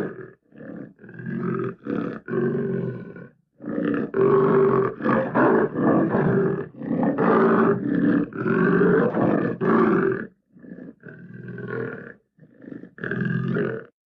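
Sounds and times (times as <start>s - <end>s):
tiger roaring: 0.0s - 13.9s.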